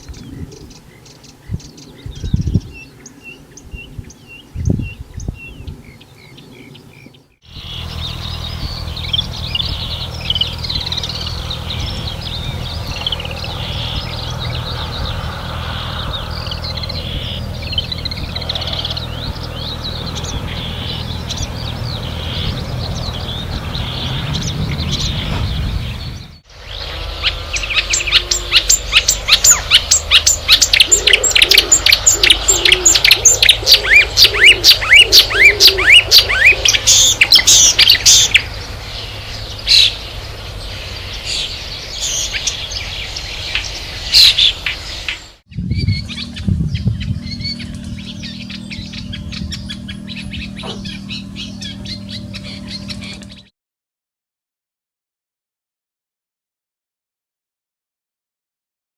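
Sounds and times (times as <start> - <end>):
bird singing varied song: 0.0 - 53.5
steady low hum: 0.0 - 53.5.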